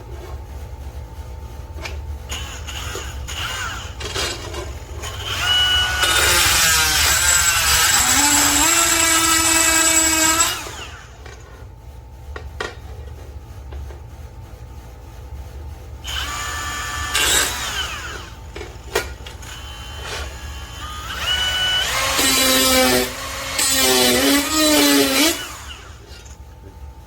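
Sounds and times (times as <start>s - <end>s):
cordless grinder whining: 2.3s - 11.4s, 16.1s - 26.4s.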